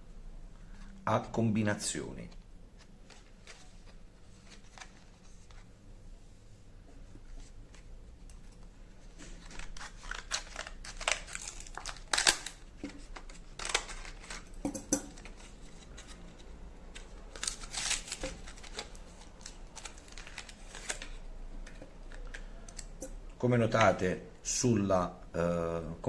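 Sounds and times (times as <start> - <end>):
plastic packaging crinkling: 9.2 - 23.0.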